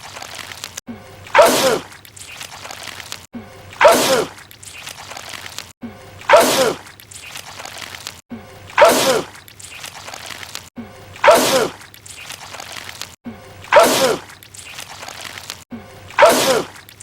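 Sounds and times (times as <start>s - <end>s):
man sneezing: 13.7s - 14.2s, 16.2s - 16.7s.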